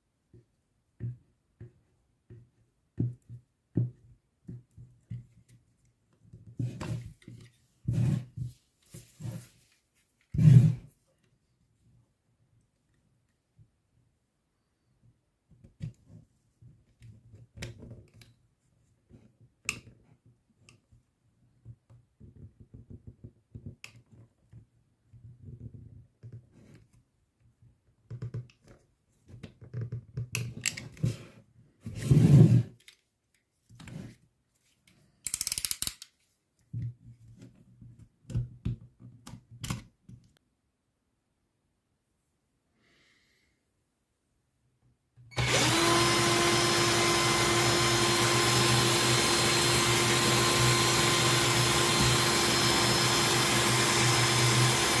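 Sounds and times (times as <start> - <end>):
drill humming: 45.3 - 55.0.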